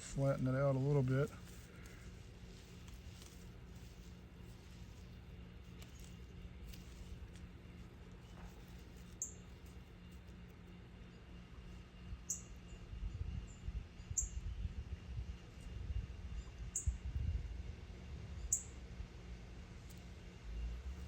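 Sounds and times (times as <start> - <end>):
small bird chirping: 9.1 - 9.5, 12.3 - 12.6.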